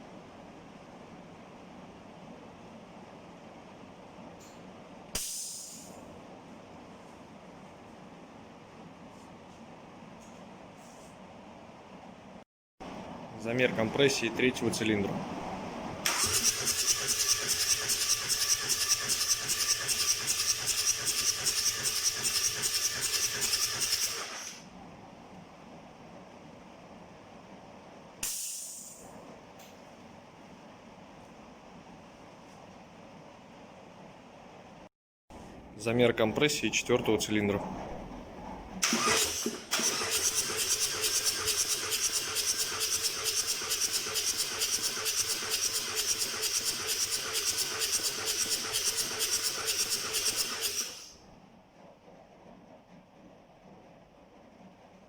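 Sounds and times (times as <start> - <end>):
diesel engine cranking on starter: 16.0 - 17.8, 38.8 - 46.3.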